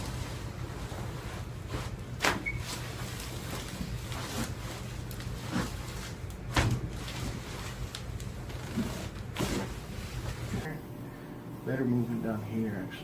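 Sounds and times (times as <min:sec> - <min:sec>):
steady low hum: 0:02.8 - 0:13.0.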